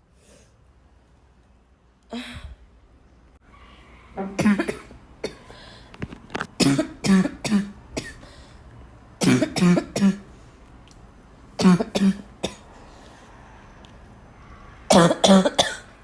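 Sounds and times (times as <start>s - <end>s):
person coughing: 4.2s - 5.5s, 6.6s - 8.2s, 9.2s - 10.3s, 11.6s - 12.6s, 14.9s - 15.9s.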